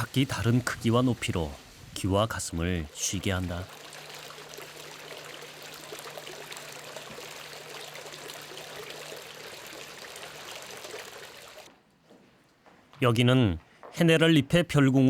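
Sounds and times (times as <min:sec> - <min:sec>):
fountain water splashing: 0:00.0 - 0:11.7.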